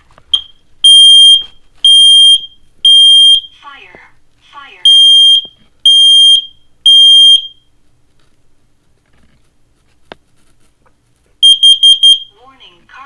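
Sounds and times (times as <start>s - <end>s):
smoke alarm beeps: 0.3s - 3.6s, 4.8s - 7.7s, 11.4s - 12.4s.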